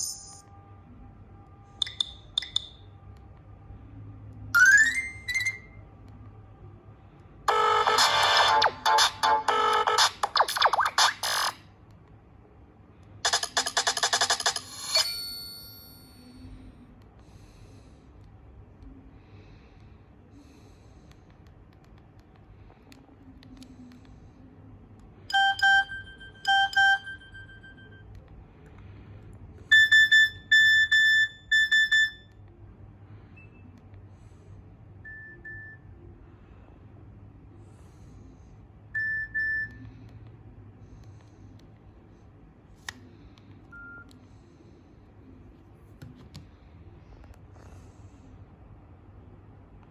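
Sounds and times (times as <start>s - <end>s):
mobile phone ringtone: 4.6s - 5.7s, 7.5s - 10.2s, 13.3s - 16.4s, 25.3s - 28.1s.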